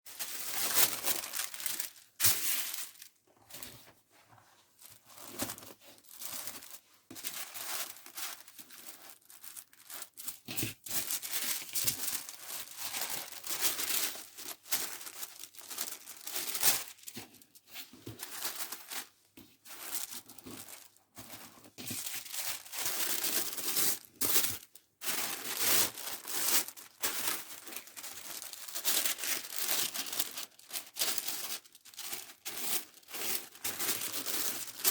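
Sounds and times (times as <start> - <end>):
packing materials crinkling: 0.1 - 3.8, 4.8 - 34.9.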